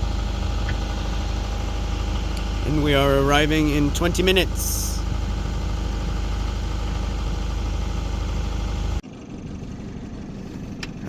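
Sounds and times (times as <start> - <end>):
boat engine droning: 0.0 - 11.0.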